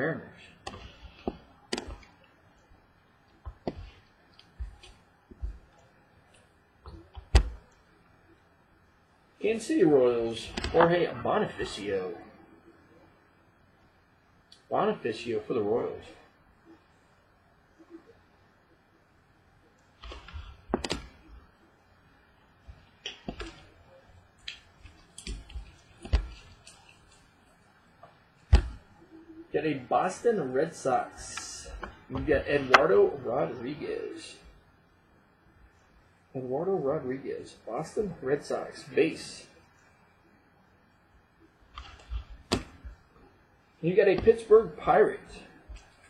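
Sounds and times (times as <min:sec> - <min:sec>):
cards clicking and tapping: 0:00.6 - 0:02.1, 0:20.1 - 0:21.2
trading cards clicking and tapping: 0:00.6 - 0:02.1, 0:03.4 - 0:05.8.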